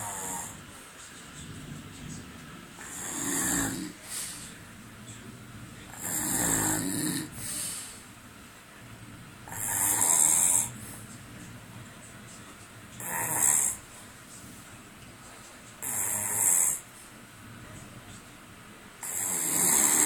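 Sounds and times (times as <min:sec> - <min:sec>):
man snoring: 0:00.0 - 0:00.6, 0:02.8 - 0:04.4, 0:05.9 - 0:07.6, 0:09.5 - 0:10.8, 0:13.0 - 0:13.8, 0:15.8 - 0:16.8, 0:19.0 - 0:20.0.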